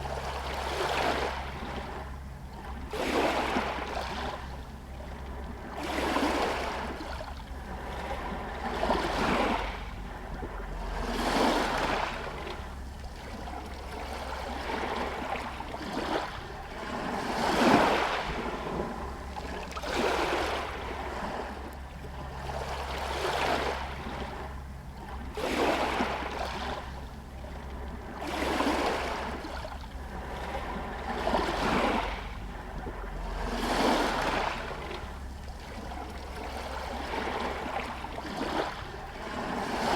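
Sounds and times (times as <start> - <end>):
waves splashing against stones: 13.6 - 21.8, 33.1 - 39.9.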